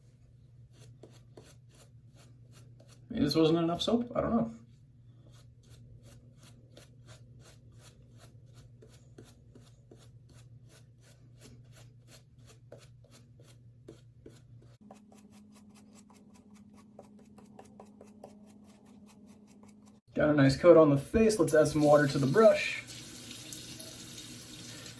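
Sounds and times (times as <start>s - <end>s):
shaving brush rubbing on face: 0.6s - 4.0s, 4.6s - 20.1s.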